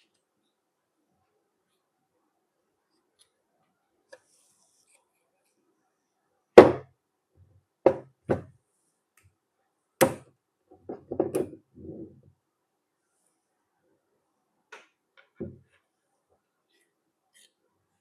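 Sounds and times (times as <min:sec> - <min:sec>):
hard objects knocking on hard surface: 0:07.9 - 0:08.5, 0:10.8 - 0:12.0.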